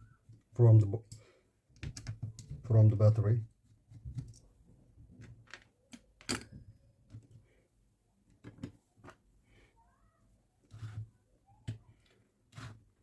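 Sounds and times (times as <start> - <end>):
plastic parts clicking and tapping: 1.1 - 2.7, 5.2 - 7.4, 8.3 - 9.2.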